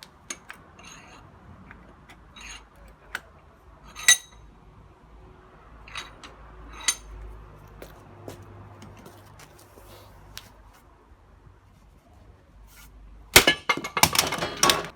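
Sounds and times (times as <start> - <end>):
sledgehammer striking metal lock: 13.4 - 14.9.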